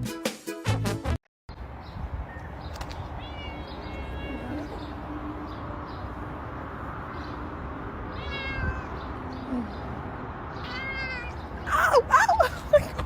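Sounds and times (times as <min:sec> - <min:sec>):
cat meowing: 0:03.2 - 0:04.9, 0:08.1 - 0:09.2, 0:10.5 - 0:11.5.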